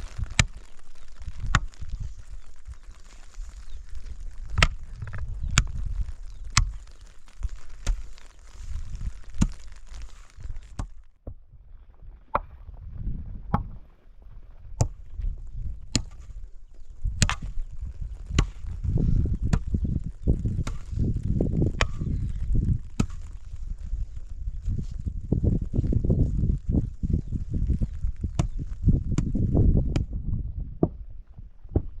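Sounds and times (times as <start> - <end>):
hand tool chopping: 20.6 - 21.0, 23.0 - 23.3.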